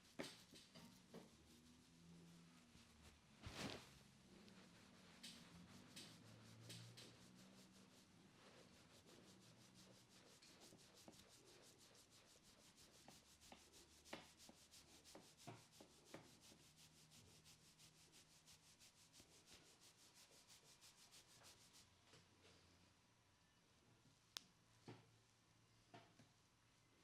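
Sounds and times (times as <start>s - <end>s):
hands rubbing hair and scalp: 0.0s - 21.9s.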